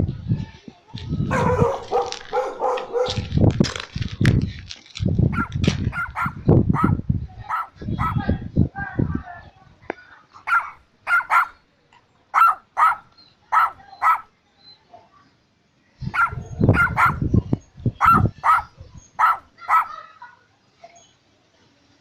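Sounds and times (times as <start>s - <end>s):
low rumbling scuffle: 0.0s - 9.8s
dog barking sharply: 1.3s - 3.3s, 5.4s - 8.2s, 10.5s - 11.6s, 12.4s - 13.0s, 13.6s - 14.3s, 16.2s - 17.2s, 18.0s - 20.0s.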